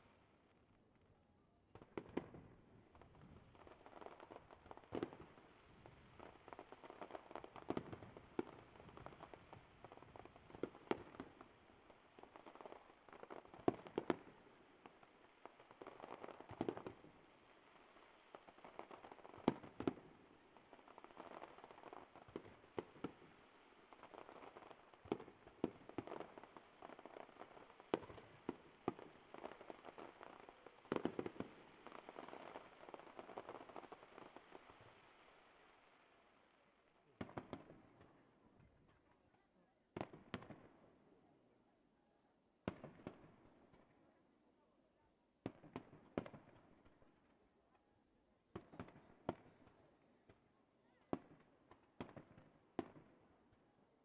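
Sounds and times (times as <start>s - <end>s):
fireworks crackling: 1.7s - 38.0s.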